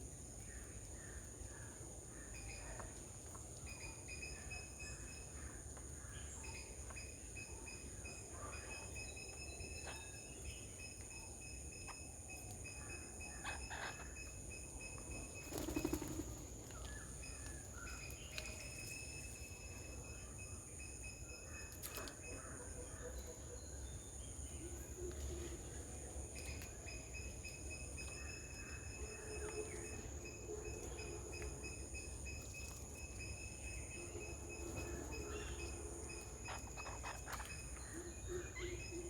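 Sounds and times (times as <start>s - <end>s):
insects droning: 0.0s - 39.0s
bird chirps and calls: 13.3s - 14.4s, 34.0s - 39.0s.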